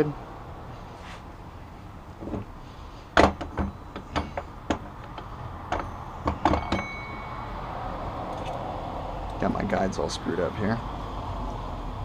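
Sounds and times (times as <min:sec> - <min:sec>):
metal parts clicking and knocking: 0:03.2 - 0:06.9.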